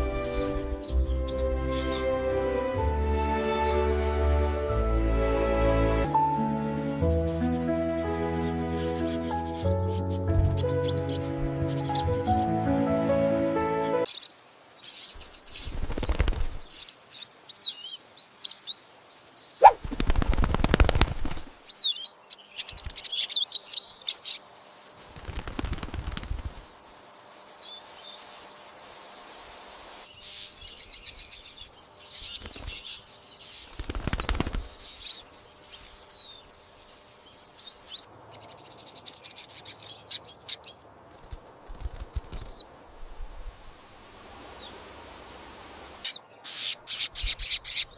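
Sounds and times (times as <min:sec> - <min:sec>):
small bird chirping: 0:00.0 - 0:02.0, 0:13.9 - 0:24.5, 0:27.3 - 0:28.7, 0:30.0 - 0:41.0, 0:41.6 - 0:43.4, 0:46.0 - 0:47.9
loud rustling bursts: 0:15.6 - 0:16.7, 0:19.6 - 0:21.7, 0:25.0 - 0:26.9, 0:33.7 - 0:35.1, 0:41.1 - 0:42.6.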